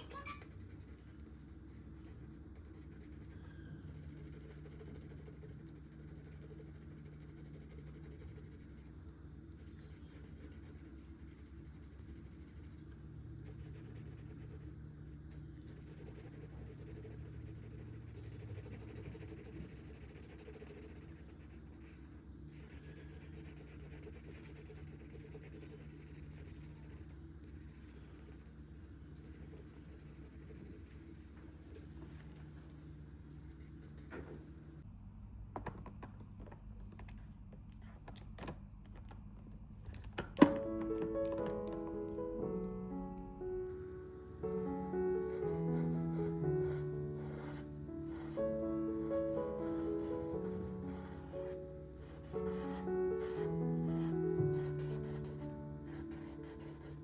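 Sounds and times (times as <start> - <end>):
marker rubbing on paper: 15.7 - 28.4, 45.2 - 48.4, 49.1 - 57.0.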